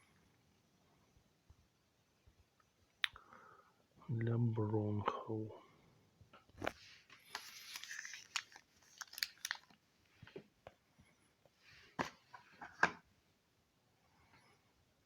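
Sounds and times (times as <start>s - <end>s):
packaging rustling and crinkling: 6.6s - 9.8s.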